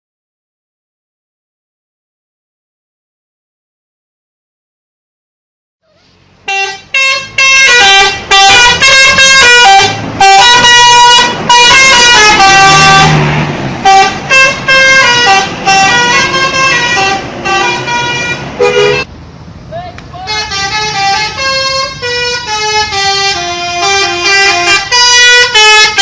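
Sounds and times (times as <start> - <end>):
musical air horn tune: 6.5 - 19.1, 20.3 - 26.0.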